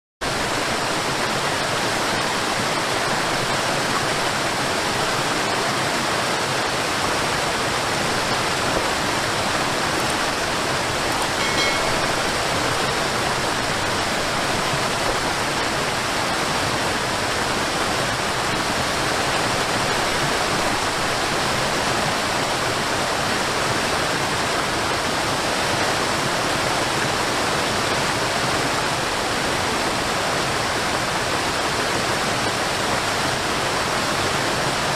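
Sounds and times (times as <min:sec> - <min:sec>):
flowing water rushing: 0:00.2 - 0:34.9.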